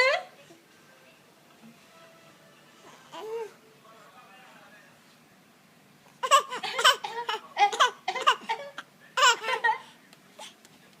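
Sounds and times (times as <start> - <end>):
baby laughing: 6.2 - 10.5.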